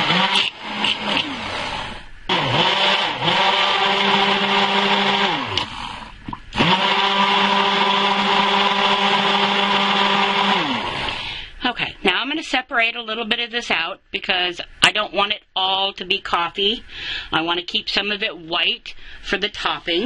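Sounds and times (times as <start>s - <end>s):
stick blender whirring: 0.0s - 11.4s.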